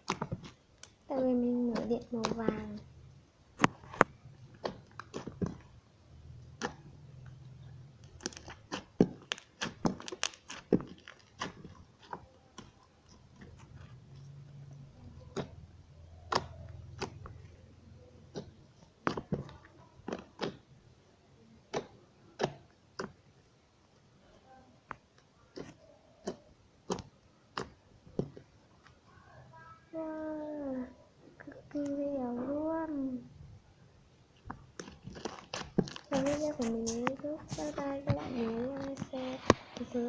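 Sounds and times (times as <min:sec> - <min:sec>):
slime clicking and popping: 0:03.6 - 0:05.7, 0:08.0 - 0:13.7, 0:15.2 - 0:17.4, 0:18.3 - 0:20.8, 0:21.7 - 0:23.3, 0:24.9 - 0:28.6, 0:34.4 - 0:39.1.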